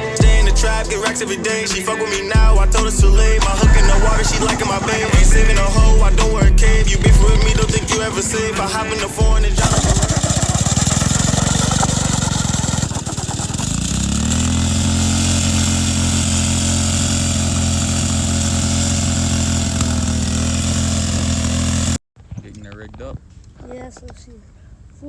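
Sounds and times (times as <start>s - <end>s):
pressure washer engine running: 2.9s - 22.0s.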